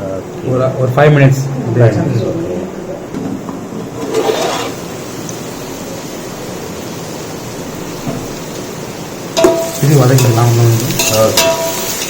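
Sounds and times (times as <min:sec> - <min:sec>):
onions sizzling in hot oil: 0:04.0 - 0:12.0.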